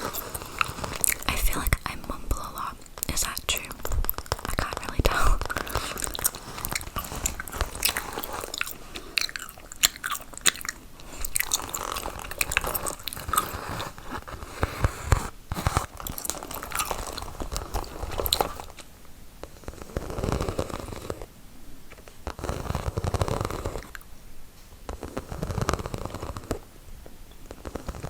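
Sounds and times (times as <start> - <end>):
gum chewing clicks and smacks: 0.0 - 18.8.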